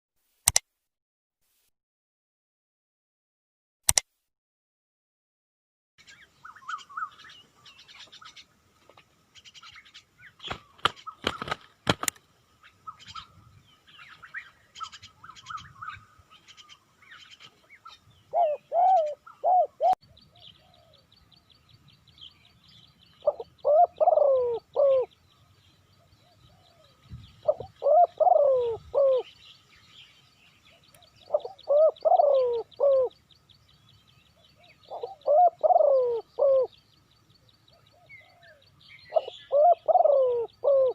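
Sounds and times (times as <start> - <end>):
sharp clicks: 0.4 - 0.6, 3.9 - 4.1, 10.8 - 12.2
small birds chirping: 6.0 - 40.9
dove cooing: 17.8 - 21.1, 23.2 - 25.2, 26.0 - 29.4, 30.7 - 33.2, 34.4 - 36.8, 37.7 - 40.9.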